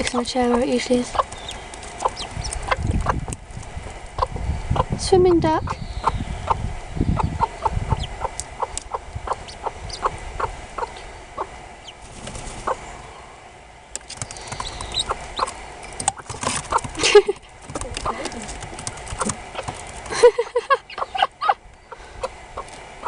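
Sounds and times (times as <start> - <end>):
ducklings peeping: 0.0 - 23.0.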